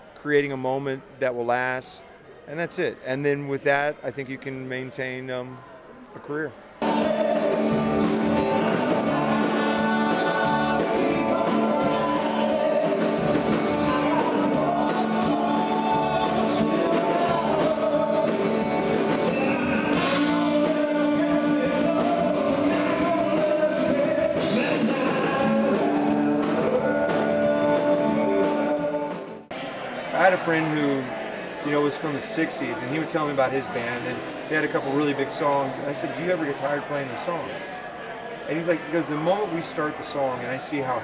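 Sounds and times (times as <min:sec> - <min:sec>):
country rock song with singer: 0:06.8 - 0:37.8.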